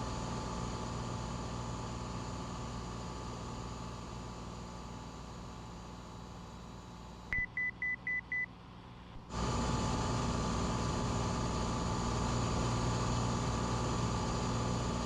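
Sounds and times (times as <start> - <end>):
aircraft engine and propeller drone: 9.3 - 15.0.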